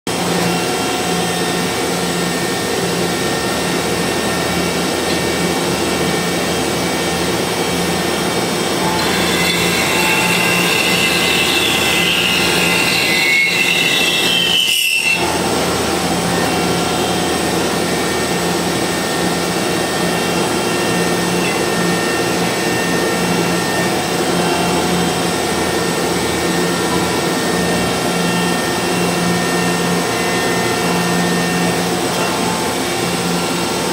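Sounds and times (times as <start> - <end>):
machine tool motor hum: 3.0 - 18.9.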